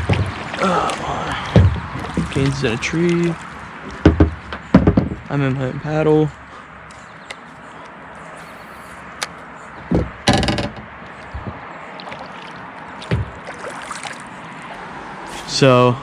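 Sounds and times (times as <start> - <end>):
low thumps: 0.0 - 2.8, 3.8 - 5.4, 9.8 - 11.7, 13.1 - 13.5
river water rushing: 0.0 - 4.0, 11.2 - 15.8.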